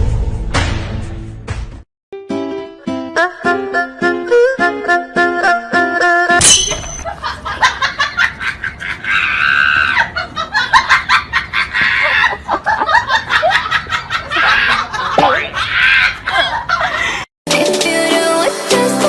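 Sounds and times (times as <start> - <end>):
people laughing and squealing: 7.3 - 17.2.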